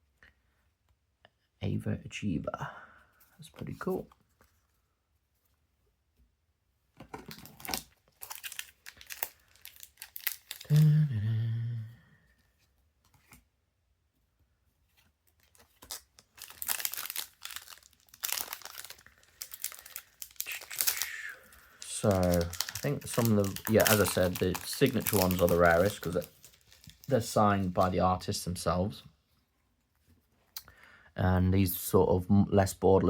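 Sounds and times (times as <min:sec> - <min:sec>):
plastic wrapper crinkling and tearing: 0:07.1 - 0:11.0, 0:15.2 - 0:28.0
low voice hum: 0:10.7 - 0:12.2.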